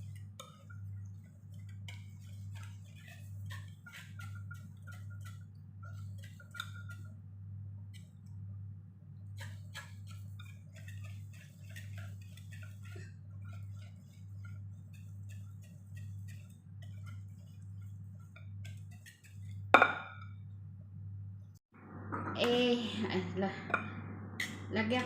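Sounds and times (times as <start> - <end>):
utensil scraping a bowl: 0.0 - 7.2, 9.3 - 20.4
low hum: 19.8 - 25.0.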